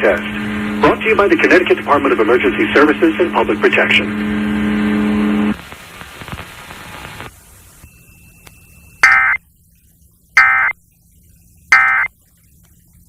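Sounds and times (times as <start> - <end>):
digital data tone bursts: 7.8 - 9.4, 10.4 - 10.8, 11.7 - 12.1.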